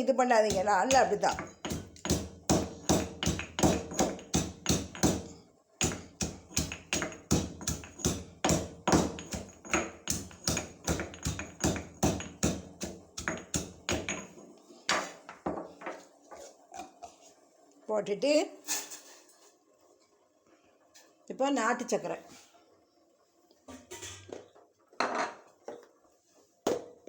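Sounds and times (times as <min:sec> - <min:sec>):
stone pounder striking spices: 0:00.5 - 0:14.3.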